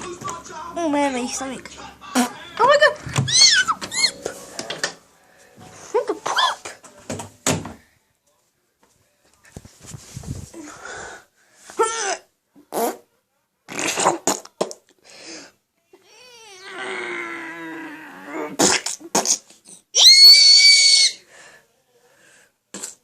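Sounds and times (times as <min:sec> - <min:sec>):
fart sounds: 0:02.2 - 0:02.4, 0:12.6 - 0:13.1, 0:13.7 - 0:14.8, 0:18.3 - 0:19.8, 0:22.7 - 0:23.0.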